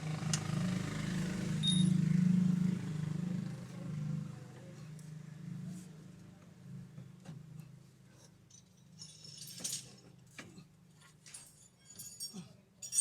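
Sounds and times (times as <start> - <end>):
light metallic clinks and clicks: 8.2 - 10.3, 11.0 - 13.0.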